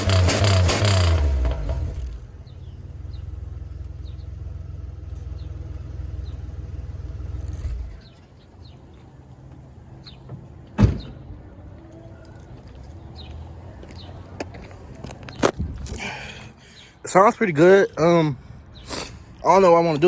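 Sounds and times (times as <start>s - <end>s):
car engine idling: 0.0s - 9.9s.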